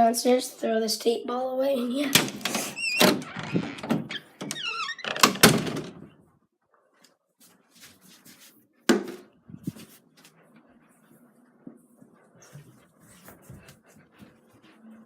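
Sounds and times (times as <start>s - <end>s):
door squeaking and thudding: 2.1s - 6.2s.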